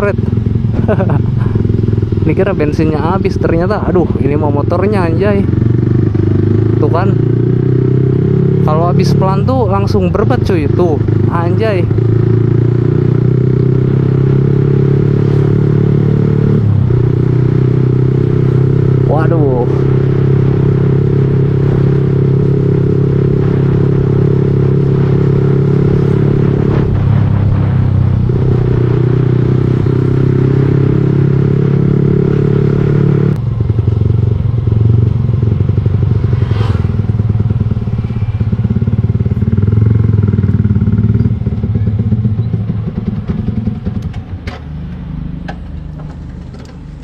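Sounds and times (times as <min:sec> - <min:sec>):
motorcycle engine running: 0:00.0 - 0:47.0.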